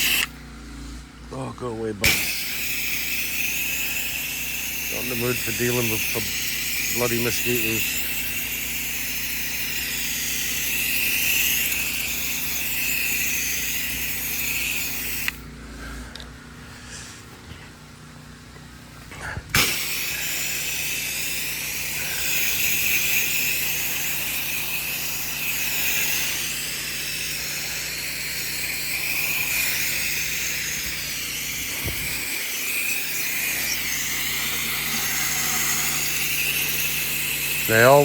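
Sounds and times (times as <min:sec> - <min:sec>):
water spray hissing: 0:00.0 - 0:00.4, 0:02.0 - 0:15.5, 0:19.5 - 0:38.0
motor hum: 0:00.0 - 0:38.0.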